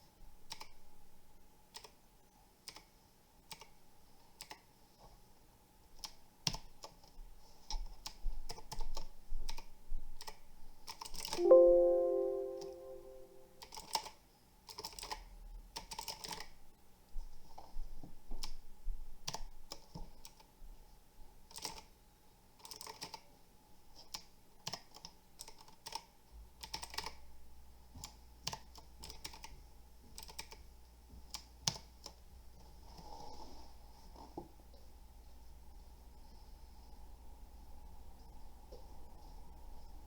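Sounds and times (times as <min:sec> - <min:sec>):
mechanical keyboard clicks: 0:03.5 - 0:03.8, 0:22.6 - 0:23.2, 0:24.1 - 0:27.2.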